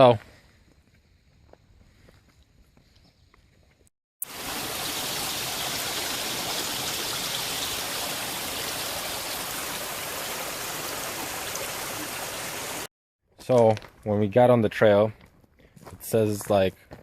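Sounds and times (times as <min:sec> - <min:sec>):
mountain stream rushing: 0:04.2 - 0:12.9.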